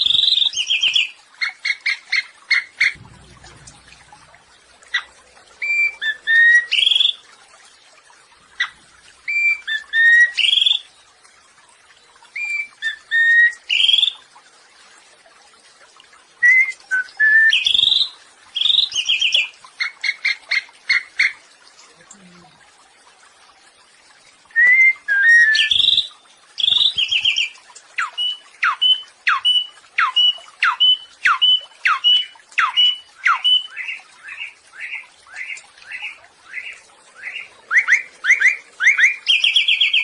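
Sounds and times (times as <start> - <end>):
songbird singing: 0.0 - 7.4, 24.5 - 40.0.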